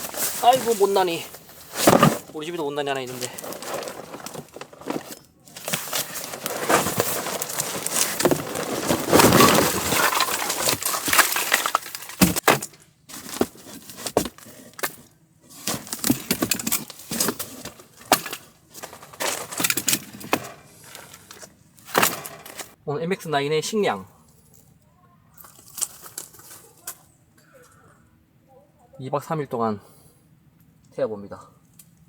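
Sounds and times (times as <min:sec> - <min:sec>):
cardboard rustling and crinkling: 0:00.0 - 0:22.8, 0:25.4 - 0:27.0.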